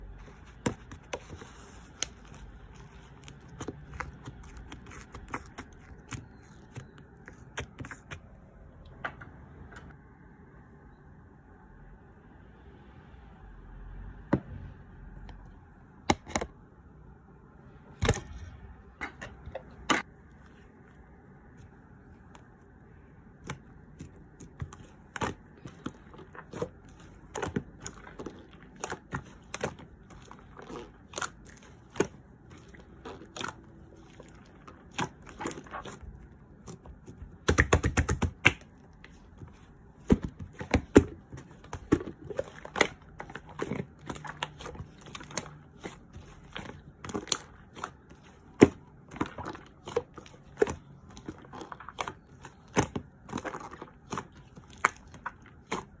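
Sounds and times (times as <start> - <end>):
crinkling: 0.0 - 8.3, 23.4 - 56.0.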